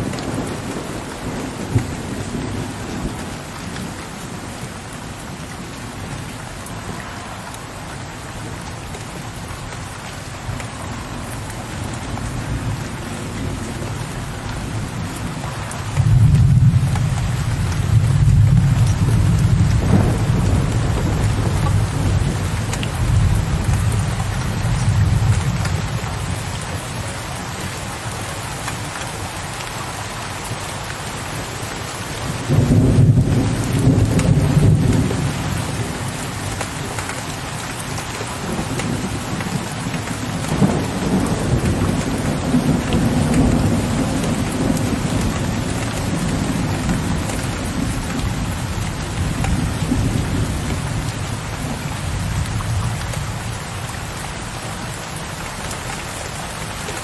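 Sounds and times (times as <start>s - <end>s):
thunder rumbling: 0.0s - 3.5s, 11.1s - 26.6s, 32.3s - 37.0s, 38.3s - 53.8s
steady rain: 0.0s - 57.0s.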